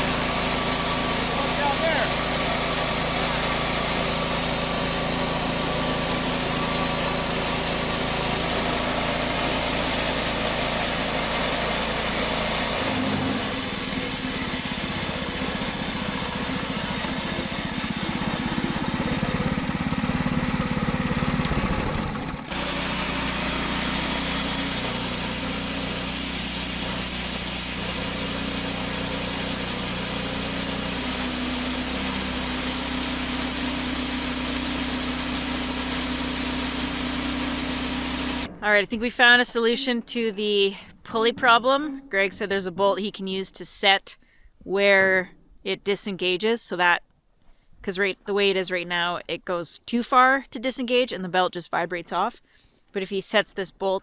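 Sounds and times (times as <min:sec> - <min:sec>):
engine running: 0:00.0 - 0:39.2.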